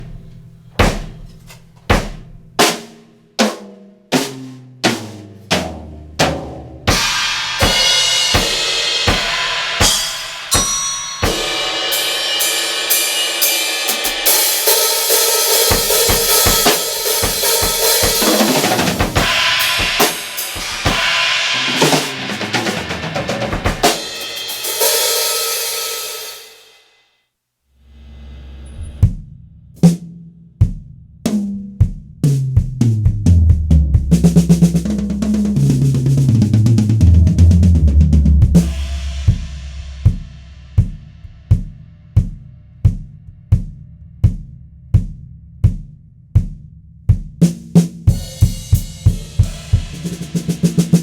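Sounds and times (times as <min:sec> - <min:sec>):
single drum hits: 0:00.0 - 0:02.8
drum kit beat: 0:00.0 - 0:26.6, 0:28.8 - 0:51.0.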